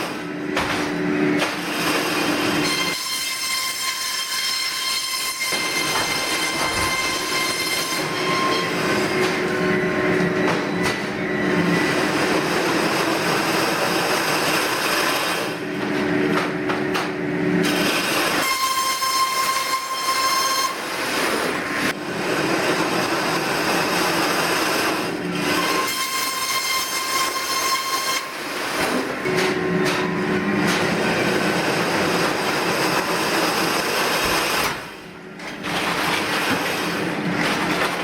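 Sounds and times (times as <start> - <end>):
circular saw cutting timber: 1.5 - 9.8, 17.6 - 29.2, 31.0 - 34.8.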